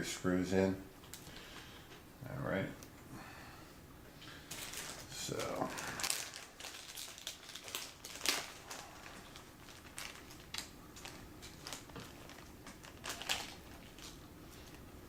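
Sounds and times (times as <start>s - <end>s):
light clicks and crinkling: 1.0s - 2.0s, 4.2s - 14.9s.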